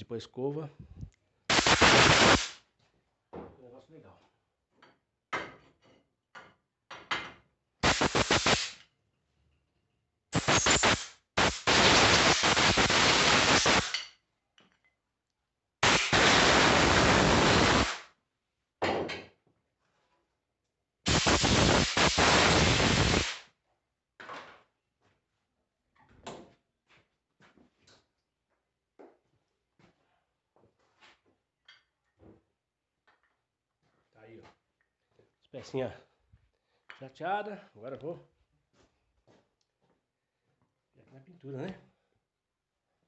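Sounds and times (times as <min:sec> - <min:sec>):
sandblaster hissing: 0:01.5 - 0:02.6, 0:07.8 - 0:08.8, 0:10.4 - 0:14.0, 0:15.8 - 0:18.0, 0:21.1 - 0:23.4.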